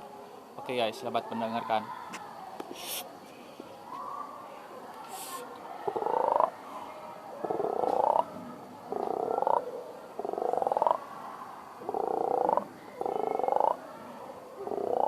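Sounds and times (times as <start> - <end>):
person beatboxing frog croaks: 5.9 - 6.5, 7.5 - 8.3, 8.9 - 11.0, 11.8 - 13.8, 14.6 - 15.0.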